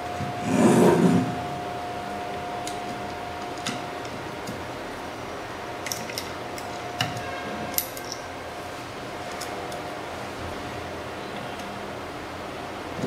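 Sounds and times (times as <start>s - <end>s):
clicks and taps of parts and tools: 5.8s - 8.2s.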